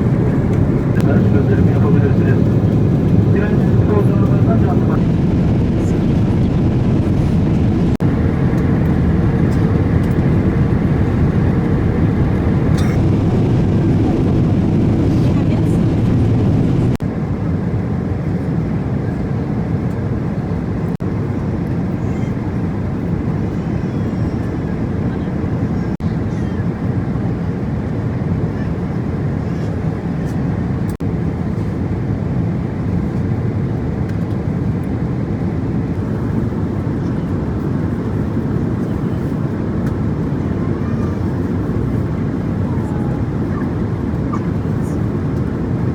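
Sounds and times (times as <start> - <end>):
airliner cabin engine roar: 0.0 - 45.9.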